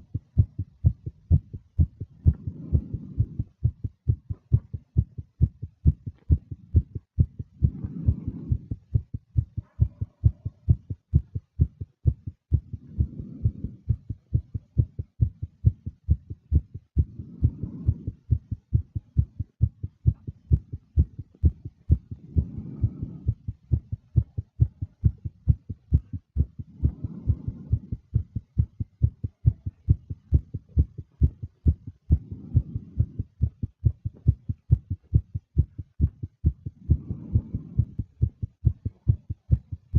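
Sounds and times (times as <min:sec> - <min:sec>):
fast heartbeat thumps: 0:00.0 - 0:39.9
breath: 0:02.3 - 0:03.6, 0:07.6 - 0:09.1, 0:12.7 - 0:14.0, 0:17.0 - 0:18.3, 0:21.9 - 0:23.6, 0:26.6 - 0:28.2, 0:36.7 - 0:38.4.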